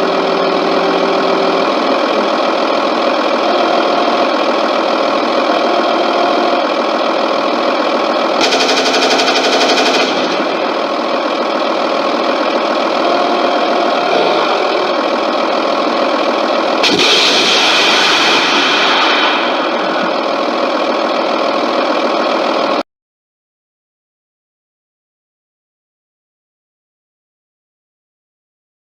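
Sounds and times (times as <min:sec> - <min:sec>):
tracked vehicle engine through small speaker: 0:00.0 - 0:22.8
rapid rattling burst: 0:06.4 - 0:13.0, 0:14.9 - 0:21.7
loud rushing noise: 0:16.8 - 0:20.6.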